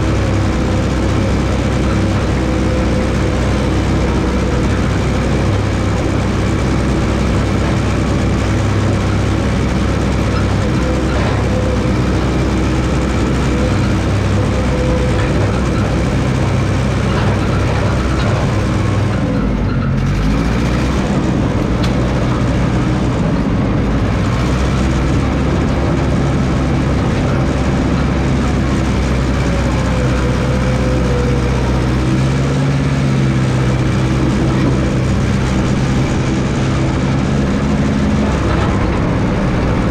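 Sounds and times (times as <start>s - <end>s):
crawler dozer engine running: 0.0s - 39.9s.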